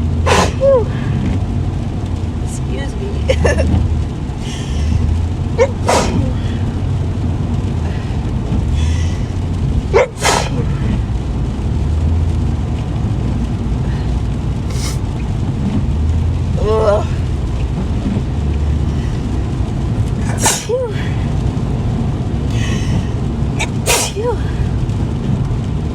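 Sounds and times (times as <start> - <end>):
car driving in rain from inside: 0.0 - 25.9
woman sneezing: 0.3 - 1.0, 5.6 - 6.6, 10.0 - 10.7, 14.7 - 15.0, 20.2 - 21.2, 23.6 - 24.6.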